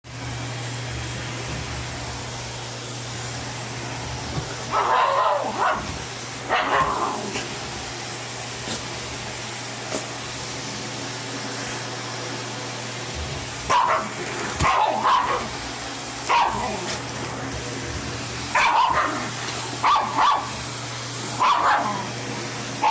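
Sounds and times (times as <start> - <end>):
vacuum cleaner running: 0.0 - 22.9
dog barking: 4.7 - 7.2, 13.7 - 15.5, 16.3 - 17.0, 18.6 - 20.6, 21.4 - 22.1.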